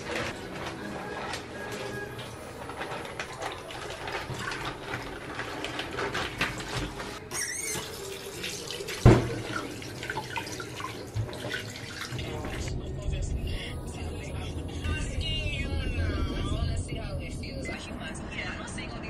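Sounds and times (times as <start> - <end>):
water running in sink: 0.0 - 12.7.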